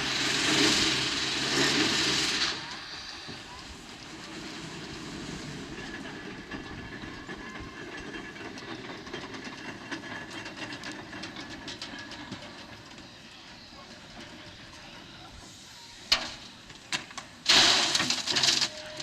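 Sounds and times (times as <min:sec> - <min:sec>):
steam hiss: 0:00.0 - 0:06.5, 0:13.2 - 0:19.0
rattling metal clanks: 0:04.1 - 0:13.2.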